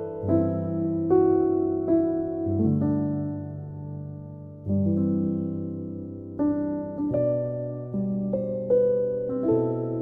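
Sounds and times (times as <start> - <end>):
slow piano-like keyboard chords: 0.0 - 10.0.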